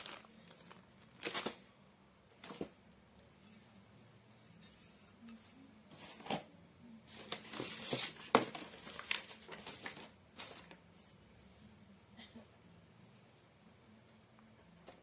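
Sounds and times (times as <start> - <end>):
objects rustling: 0.0 - 1.7, 2.3 - 3.8, 4.4 - 6.5, 7.1 - 10.9.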